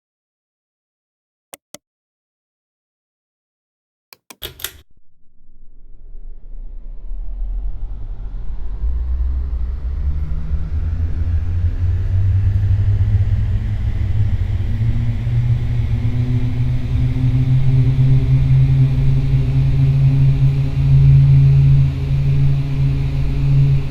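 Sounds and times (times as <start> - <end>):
ceiling fan starting up: 9.2 - 23.9.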